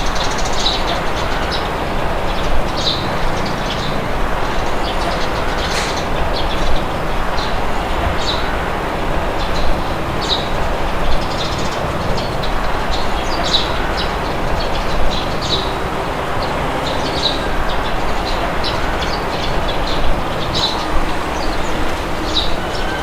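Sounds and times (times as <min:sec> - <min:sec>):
birds chirping: 0:00.0 - 0:23.0.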